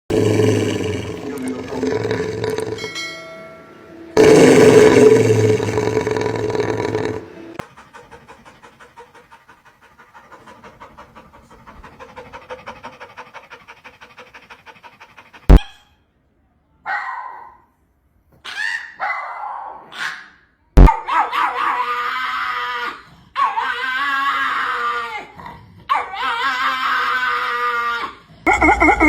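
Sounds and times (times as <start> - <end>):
dog panting: 7.6 - 15.7
short high-pitched sounds: 28.5 - 29.0.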